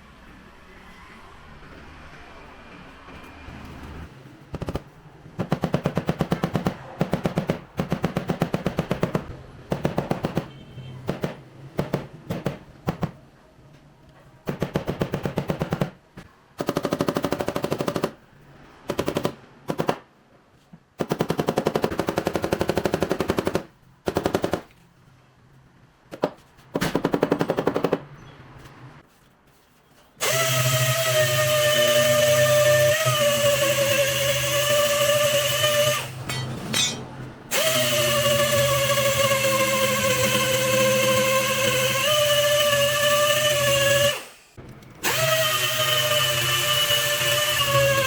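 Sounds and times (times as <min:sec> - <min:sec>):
air tool hammering in bursts: 0:04.6 - 0:13.2, 0:14.4 - 0:16.0, 0:30.2 - 0:48.0.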